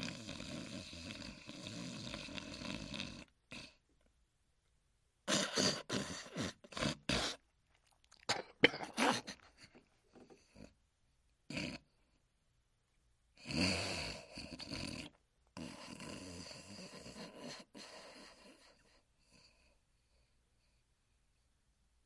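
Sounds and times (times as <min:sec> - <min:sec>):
cartoon dog snoring: 0:00.0 - 0:03.8, 0:05.2 - 0:07.4, 0:11.5 - 0:12.0, 0:13.4 - 0:19.0
short broken snorts: 0:05.3 - 0:07.5.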